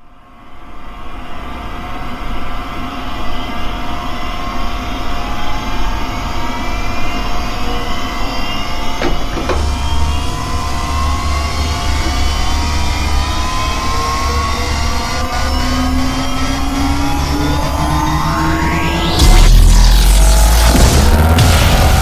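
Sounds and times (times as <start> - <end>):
whining tones rising in pitch: 1.7 - 22.0
synthesized laser roar: 6.4 - 22.0
deep rumble: 9.2 - 16.0, 16.6 - 22.0.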